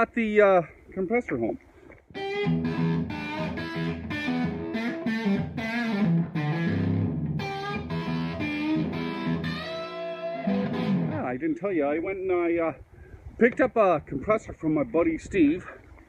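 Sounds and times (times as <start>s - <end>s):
distorted electric guitar: 2.1s - 11.3s.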